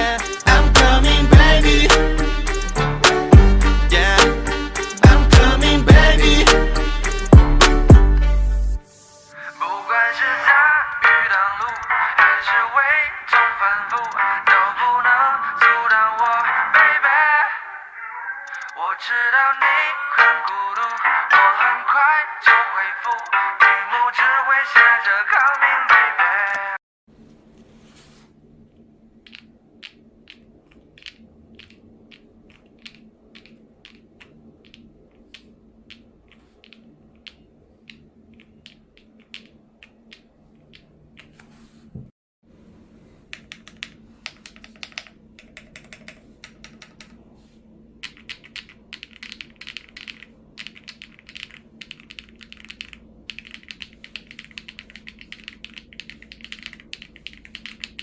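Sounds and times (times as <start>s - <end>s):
mechanical keyboard typing: 29.2s - 41.4s, 43.3s - 47.2s, 48.0s - 58.0s.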